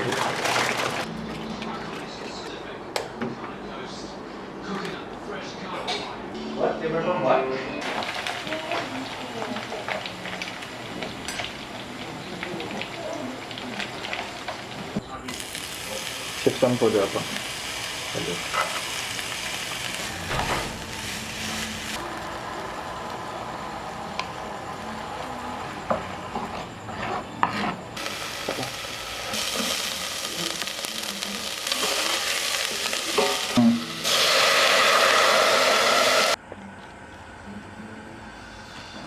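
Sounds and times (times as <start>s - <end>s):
food sizzling in a pan: 7.8s - 26.4s, 28.0s - 36.4s.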